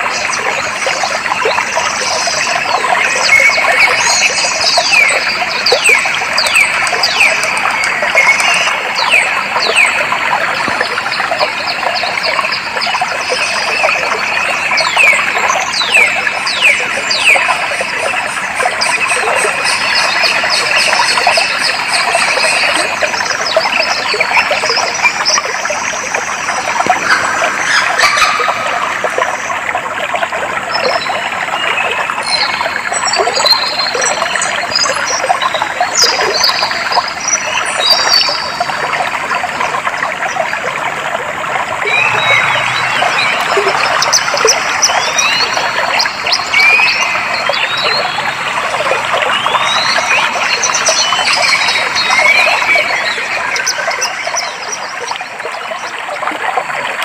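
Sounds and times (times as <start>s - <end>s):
water trickling: 0.0s - 57.0s
birds chirping: 1.6s - 29.7s, 41.6s - 55.4s
birds whistling: 41.8s - 48.2s.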